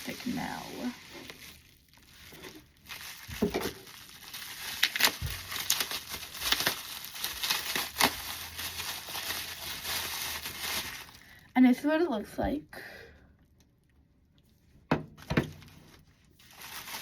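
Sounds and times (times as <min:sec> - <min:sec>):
plastic packaging crinkling: 0:00.0 - 0:11.5, 0:15.2 - 0:17.0.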